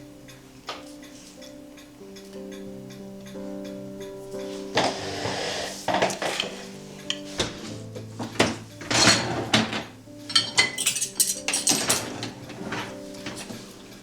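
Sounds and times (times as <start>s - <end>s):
soft background music: 0.0s - 14.0s
cutlery and dishes clinking: 4.0s - 14.0s.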